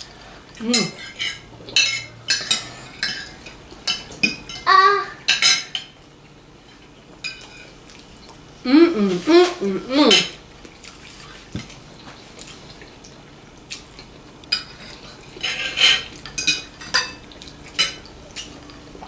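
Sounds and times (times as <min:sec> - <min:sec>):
cutlery clinking on plates: 0:00.7 - 0:04.6, 0:14.5 - 0:18.0
high-pitched vocal sound: 0:04.7 - 0:05.2.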